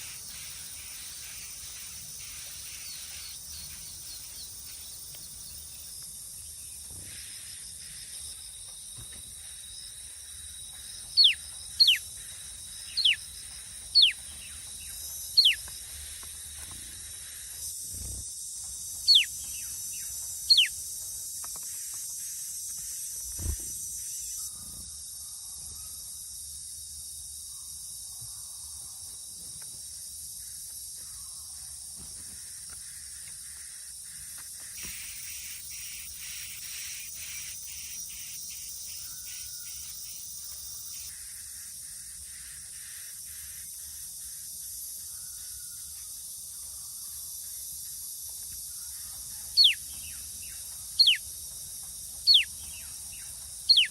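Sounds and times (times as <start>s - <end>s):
steady outdoor hiss: 0.0s - 53.9s
sharp bird call: 49.6s - 49.8s, 51.0s - 51.2s, 52.3s - 52.5s.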